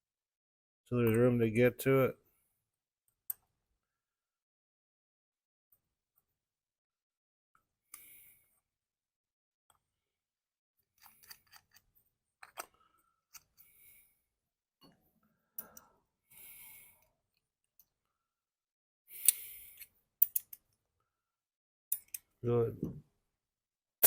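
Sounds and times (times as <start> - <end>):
small metal parts clicking: 20.2 - 20.6, 21.9 - 22.3.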